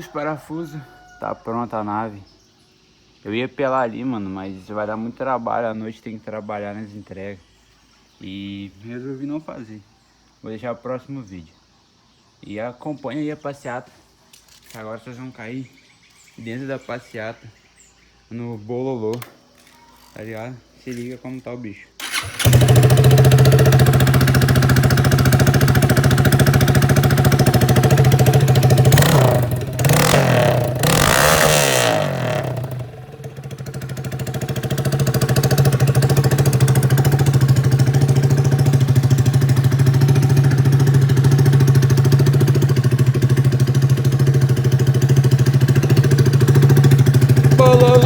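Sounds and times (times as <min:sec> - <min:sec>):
motorcycle engine idling and revving: 0:22.0 - 0:48.0.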